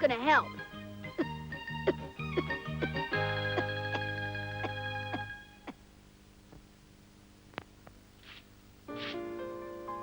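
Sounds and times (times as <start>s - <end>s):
background score music: 0.0s - 5.8s, 8.9s - 10.0s.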